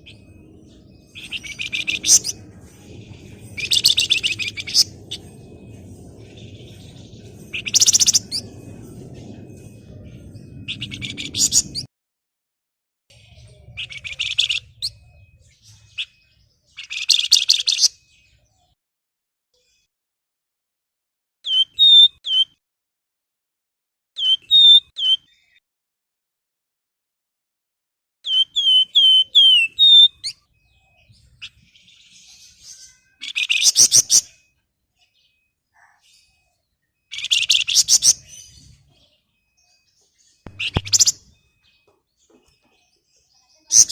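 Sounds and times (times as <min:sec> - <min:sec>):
bird high chattering song: 0:00.0 - 0:11.9, 0:13.1 - 0:18.8, 0:21.4 - 0:22.6, 0:24.2 - 0:25.6, 0:28.2 - 0:43.9
low steady hum: 0:00.0 - 0:11.9
bird chattering rattle: 0:03.1 - 0:05.9, 0:07.3 - 0:08.5, 0:40.5 - 0:41.2.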